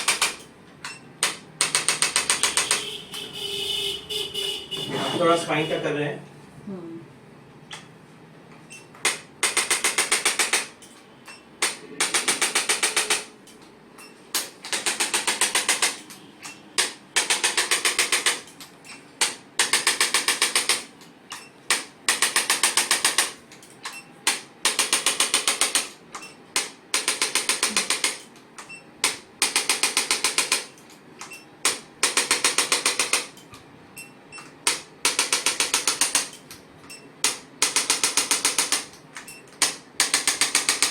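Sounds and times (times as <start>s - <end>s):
rapid machine-gun clicking: 0.0s - 0.4s, 1.2s - 2.9s, 9.0s - 10.8s, 11.6s - 13.3s, 14.4s - 16.1s, 16.8s - 18.5s, 19.2s - 20.9s, 21.7s - 23.4s, 24.3s - 28.3s, 29.0s - 30.8s, 31.6s - 33.4s, 34.6s - 36.5s, 37.2s - 40.9s.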